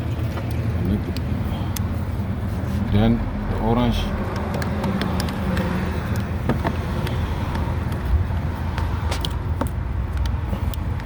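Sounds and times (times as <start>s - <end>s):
plastic connectors clicking: 4.3s - 8.0s.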